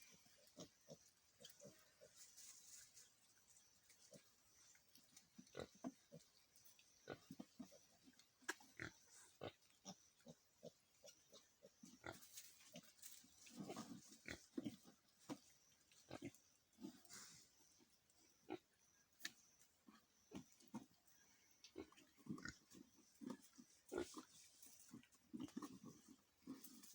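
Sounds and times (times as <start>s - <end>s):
pigs grunting: 6.9s - 15.4s, 16.0s - 17.5s, 21.7s - 26.9s.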